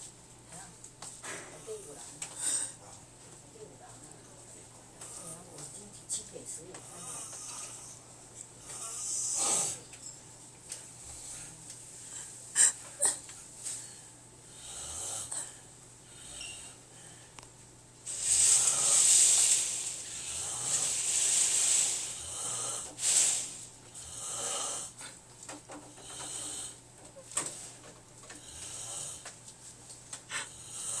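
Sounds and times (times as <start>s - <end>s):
man snoring: 8.6s - 9.8s, 14.5s - 16.6s, 18.1s - 25.1s, 26.0s - 26.8s, 28.4s - 29.3s, 30.3s - 31.0s.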